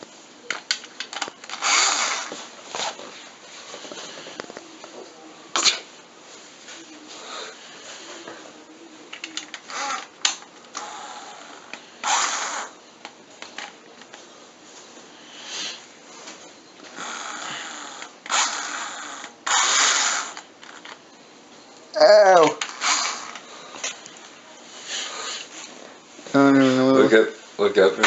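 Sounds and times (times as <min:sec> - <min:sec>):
power drill bursts: 0:01.5 - 0:02.4, 0:09.7 - 0:10.2, 0:10.8 - 0:12.8, 0:17.0 - 0:20.8, 0:22.7 - 0:23.4.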